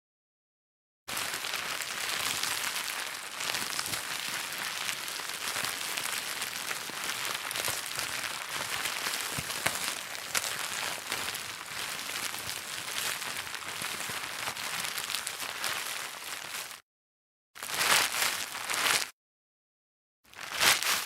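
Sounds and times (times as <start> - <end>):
plastic bag crinkling: 1.1 - 16.8, 20.3 - 21.0.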